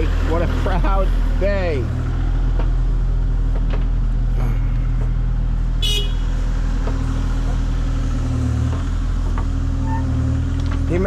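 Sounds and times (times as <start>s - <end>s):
excavator engine running: 0.0s - 11.0s
brief high squeak: 9.8s - 10.2s.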